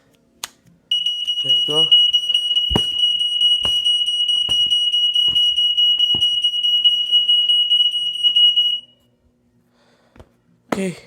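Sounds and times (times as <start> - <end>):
smoke alarm shrill tone: 0.9 - 9.0.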